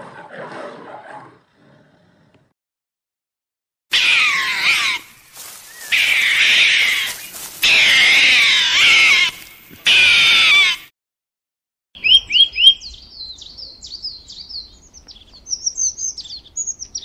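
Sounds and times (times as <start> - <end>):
animal calling: 3.9 - 10.9.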